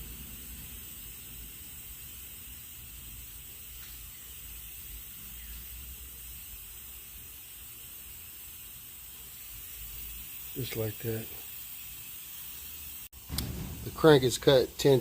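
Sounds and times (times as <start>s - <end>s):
faint hiss: 0.0s - 15.0s
low rumble: 13.2s - 14.8s.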